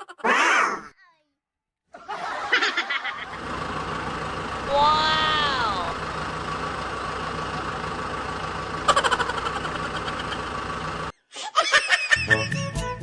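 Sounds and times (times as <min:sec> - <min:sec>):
engine-like running hum: 0:02.2 - 0:11.2.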